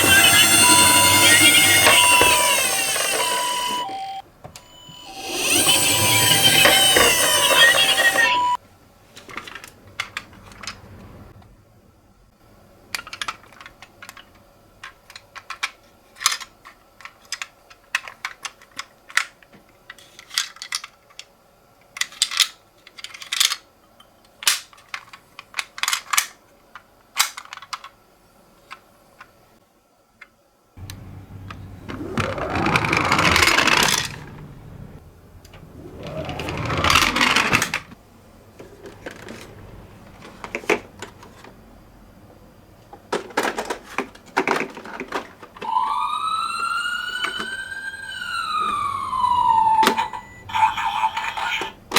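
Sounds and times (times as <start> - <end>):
rushing noise: 0.0 - 4.0, 30.8 - 38.0
toy cars clicking and clacking: 12.9 - 21.3, 22.0 - 23.7, 24.3 - 28.0, 30.8 - 38.0, 43.1 - 51.8.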